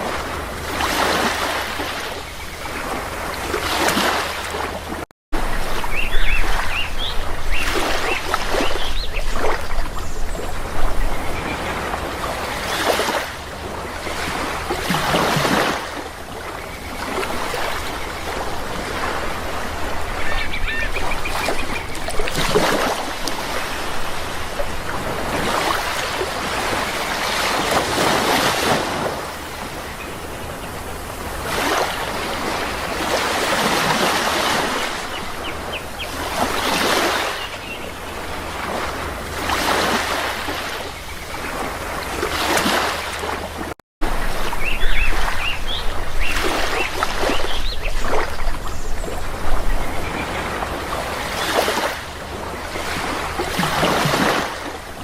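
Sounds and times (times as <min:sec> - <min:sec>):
sea waves breaking: 0:00.0 - 0:55.0
bird calls: 0:05.5 - 0:11.9, 0:19.8 - 0:23.0, 0:34.0 - 0:38.2, 0:44.2 - 0:51.9.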